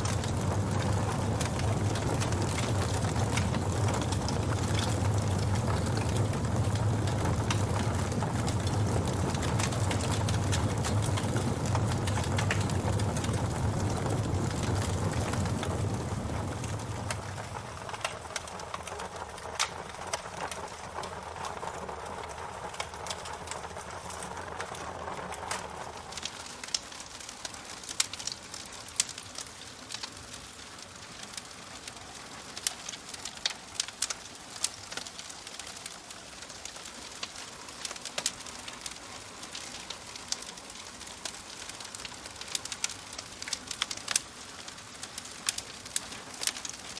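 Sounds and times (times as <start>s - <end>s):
low rumble: 0.0s - 19.5s
wood fire crackling: 0.0s - 46.9s.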